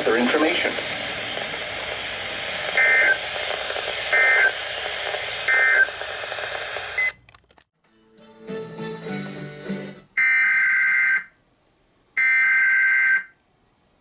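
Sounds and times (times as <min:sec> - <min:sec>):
radio static hiss: 0:00.0 - 0:07.0.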